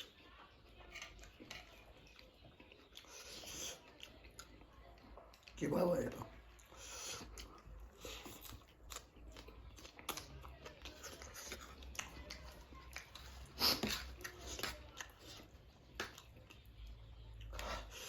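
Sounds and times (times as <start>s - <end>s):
person chewing noodles: 0.0s - 5.6s, 6.3s - 18.0s.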